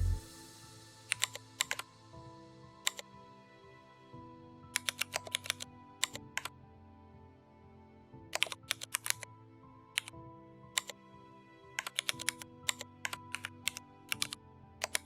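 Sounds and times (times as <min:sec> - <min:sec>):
soft background music: 0:00.0 - 0:15.0
computer keyboard typing: 0:01.1 - 0:01.8, 0:04.8 - 0:06.5, 0:08.3 - 0:09.2, 0:11.8 - 0:15.0.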